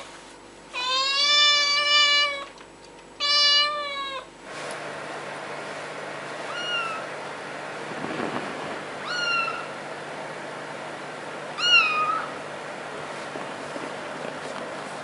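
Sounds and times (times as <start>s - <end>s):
cat meowing: 0.8s - 2.5s, 3.2s - 4.3s, 6.5s - 7.1s, 9.0s - 9.8s, 11.6s - 12.4s.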